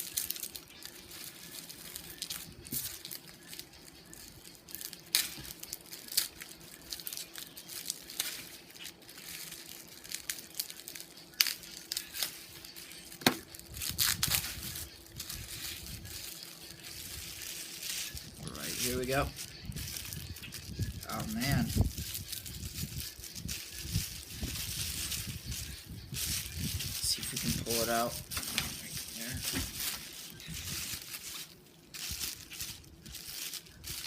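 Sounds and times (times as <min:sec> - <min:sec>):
plastic packaging crinkling: 0:00.0 - 0:34.0.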